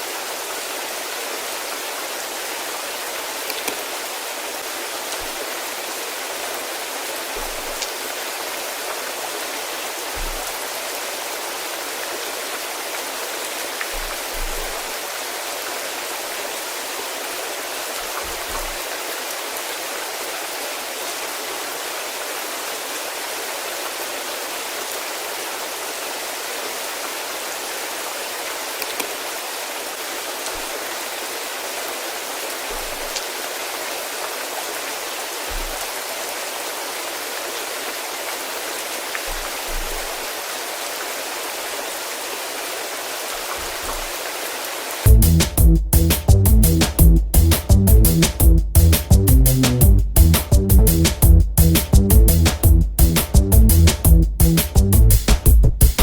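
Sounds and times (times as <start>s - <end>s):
steady rainfall: 0.0s - 56.0s
raindrop ticks: 3.4s - 4.0s, 7.3s - 8.0s, 10.2s - 10.6s, 13.8s - 15.0s, 18.0s - 18.9s, 28.8s - 29.2s, 32.7s - 33.3s, 35.5s - 35.9s, 45.1s - 56.0s.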